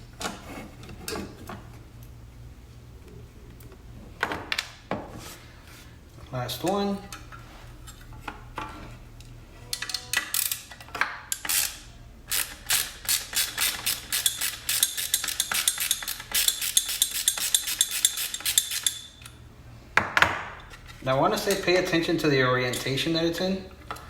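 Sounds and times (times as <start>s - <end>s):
hand ratchet clicking: 11.3s - 19.1s.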